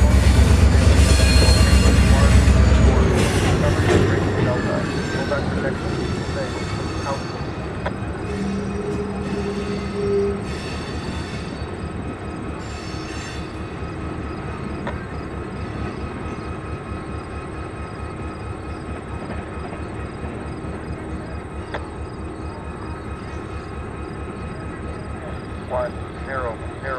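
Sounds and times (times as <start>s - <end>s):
diesel locomotive engine running: 0.0s - 26.9s.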